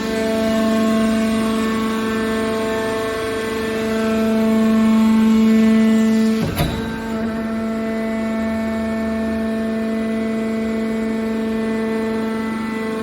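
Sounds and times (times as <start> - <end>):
baler machine hum: 4.4 - 12.8
loud knock: 6.4 - 8.0.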